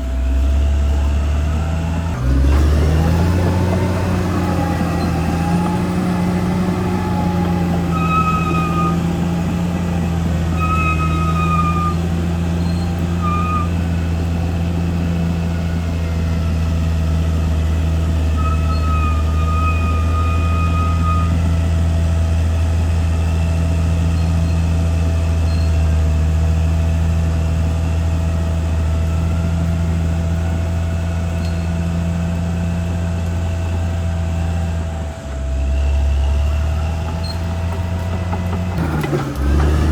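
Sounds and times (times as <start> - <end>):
bulldozer diesel engine running: 0.0 - 39.9
high-pitched squeals: 0.1 - 14.2, 18.3 - 21.5.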